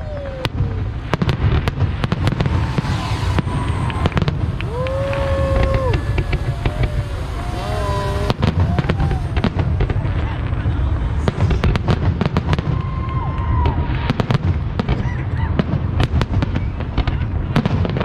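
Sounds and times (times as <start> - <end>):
low rumble: 0.0 - 13.8
firework bangs and crackles: 0.0 - 18.0
whistling fireworks: 0.0 - 18.0.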